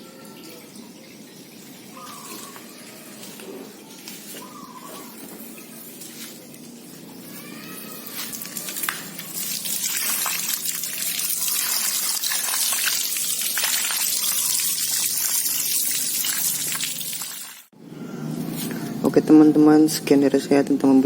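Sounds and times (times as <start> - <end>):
water spraying from a hose: 1.8 - 17.7.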